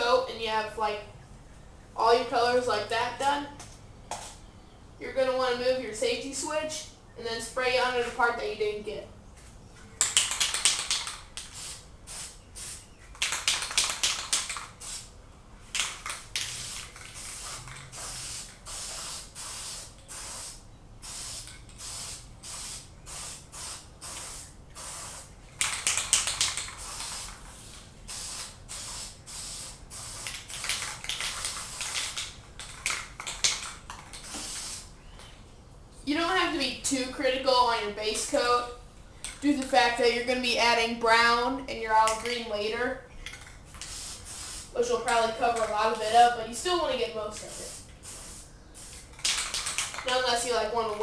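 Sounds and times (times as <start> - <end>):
spray paint can hissing: 10.0 - 15.1, 15.7 - 34.9, 42.0 - 42.5, 43.3 - 51.0.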